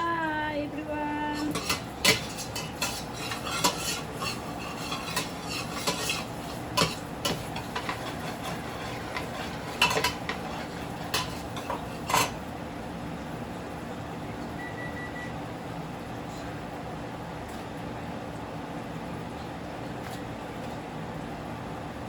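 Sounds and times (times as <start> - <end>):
steady low hum: 0.0 - 22.0
utensils clinking on dishes: 1.4 - 12.4.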